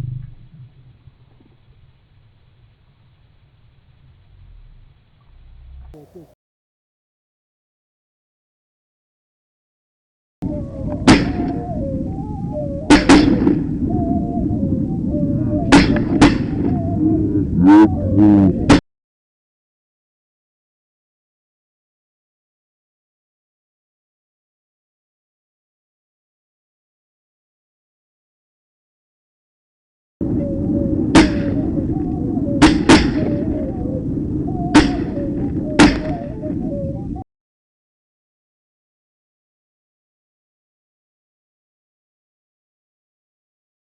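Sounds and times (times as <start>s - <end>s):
low background rumble: 0.0s - 6.3s, 10.4s - 18.8s
outdoor background noise: 0.0s - 6.4s, 10.4s - 18.8s, 30.2s - 37.2s
loud pitched call: 6.0s - 6.4s.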